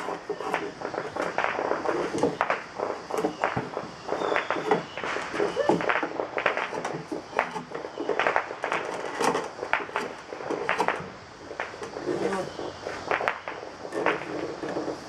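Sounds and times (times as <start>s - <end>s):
draw knife scraping wood: 0.0s - 1.3s, 8.9s - 10.9s.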